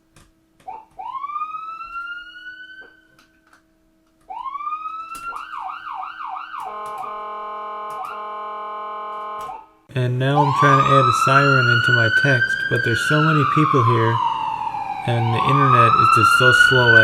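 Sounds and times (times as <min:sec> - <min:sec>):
siren wailing and yelping: 0:00.6 - 0:03.2, 0:04.3 - 0:17.0
long horn blast: 0:06.6 - 0:11.9.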